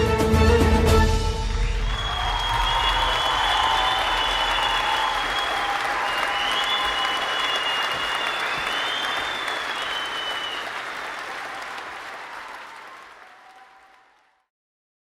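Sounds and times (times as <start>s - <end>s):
crowd applauding: 1.4s - 14.5s.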